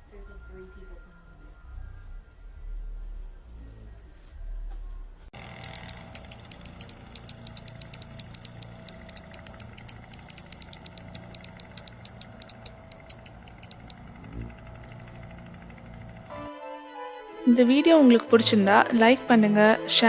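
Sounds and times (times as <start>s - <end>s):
hummingbird chip calls: 5.4s - 16.3s.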